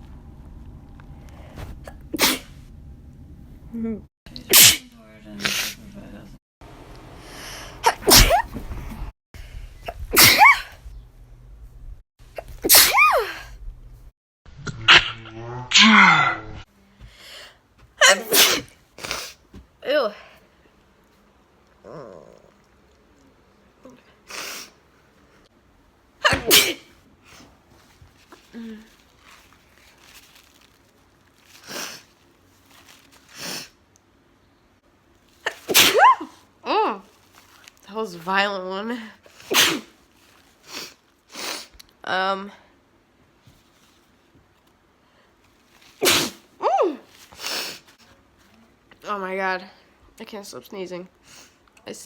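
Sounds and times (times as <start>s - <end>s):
woman sneezing: 2.2s - 2.5s, 4.5s - 4.8s, 7.8s - 8.6s, 10.1s - 10.7s, 12.6s - 13.5s, 18.0s - 19.4s, 26.2s - 26.9s, 35.4s - 37.0s, 39.4s - 40.0s, 46.0s - 47.8s
woman sniffing: 40.6s - 41.7s, 47.3s - 47.9s.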